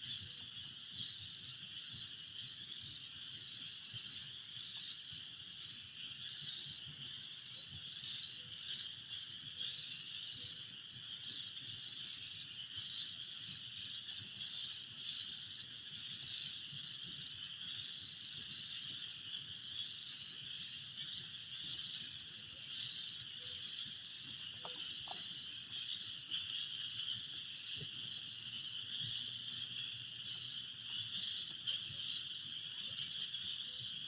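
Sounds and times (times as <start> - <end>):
chorus of frogs calling: 0.1 - 34.0.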